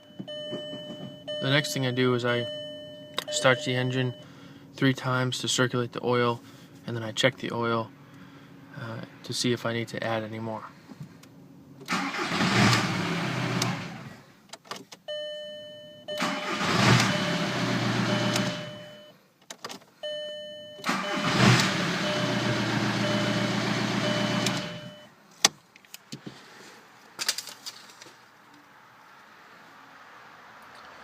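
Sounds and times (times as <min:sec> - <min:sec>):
dashboard chime beeping: 0:00.0 - 0:04.3, 0:15.1 - 0:16.5, 0:17.1 - 0:19.1, 0:20.0 - 0:25.1
diesel car engine starting and running: 0:00.0 - 0:06.6, 0:11.2 - 0:14.4, 0:16.1 - 0:19.1, 0:20.8 - 0:25.1.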